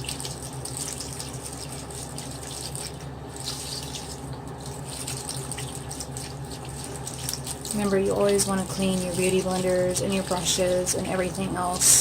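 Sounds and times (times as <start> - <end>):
sponge squishing against soap: 0.0 - 12.0
tap water running into sink: 0.0 - 12.0.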